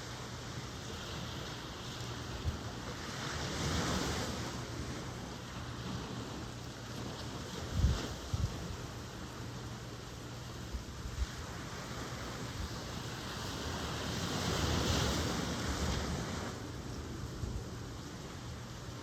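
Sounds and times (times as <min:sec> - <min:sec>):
ocean surf waves: 0:00.0 - 0:19.0
wind on microphone: 0:05.8 - 0:09.3.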